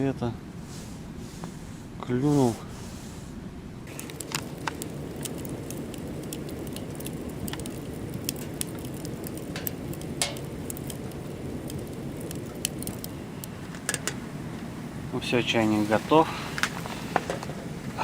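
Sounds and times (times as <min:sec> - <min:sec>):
kettle water boiling: 0:03.8 - 0:18.0
wood stove crackles: 0:03.8 - 0:18.0.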